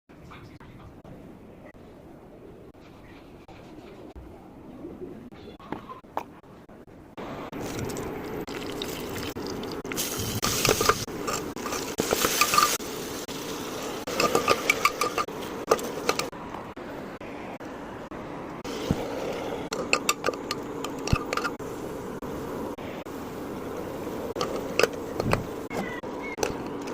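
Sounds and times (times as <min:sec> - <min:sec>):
steady sizzle: 0:07.2 - 0:25.8
sloshing liquid: 0:07.6 - 0:12.7
spoon stirring against metal pot: 0:09.4 - 0:12.8, 0:14.1 - 0:16.4, 0:19.7 - 0:21.6, 0:24.3 - 0:26.9.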